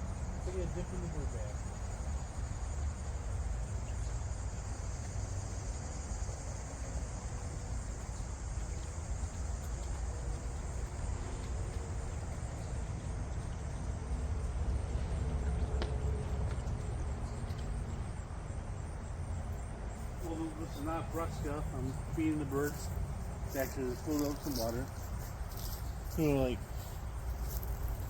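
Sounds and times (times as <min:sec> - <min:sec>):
constant low rumble: 0:00.0 - 0:28.0
insects trilling: 0:00.0 - 0:28.0.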